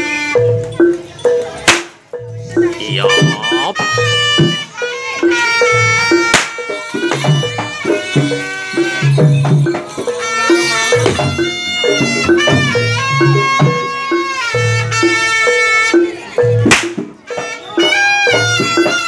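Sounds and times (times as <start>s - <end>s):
reedy shawm melody: 2.0s - 16.6s
steady drum pattern: 2.6s - 4.7s.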